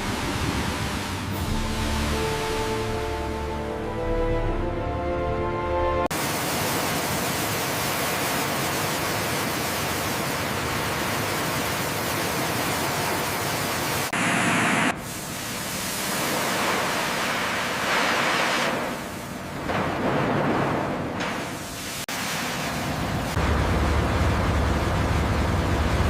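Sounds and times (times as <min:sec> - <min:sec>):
loud steady rushing noise: 0:00.0 - 0:03.8
music: 0:01.1 - 0:06.1.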